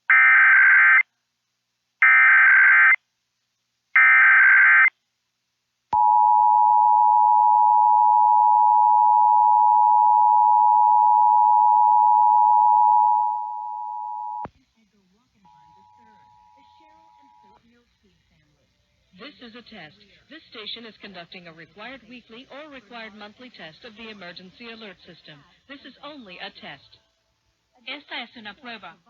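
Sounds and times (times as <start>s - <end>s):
two-tone attention signal: 6.0s - 14.5s.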